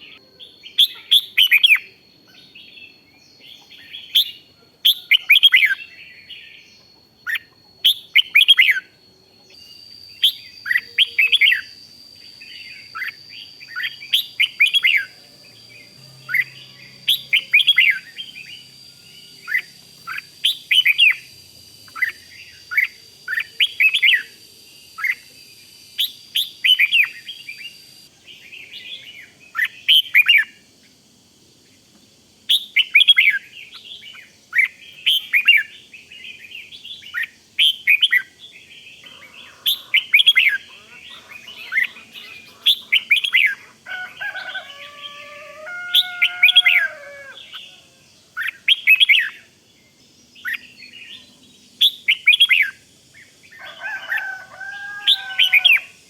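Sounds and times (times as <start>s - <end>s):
bird singing warbling phrases: 0.0s - 31.0s, 32.5s - 54.3s
thin steady high tone: 0.0s - 56.0s.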